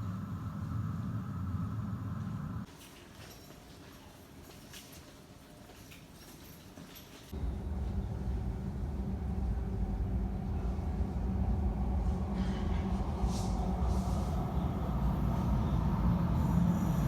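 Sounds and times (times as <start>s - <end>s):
train rumbling: 0.0s - 2.7s, 7.3s - 17.0s.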